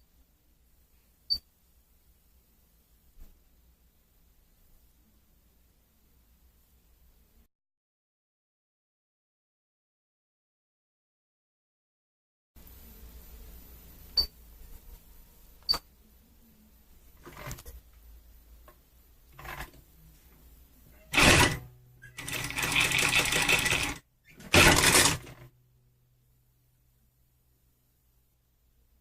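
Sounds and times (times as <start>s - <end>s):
sewing machine stitching: 19.4s - 19.8s, 21.0s - 25.5s
sewing machine clicks: 21.1s - 25.5s.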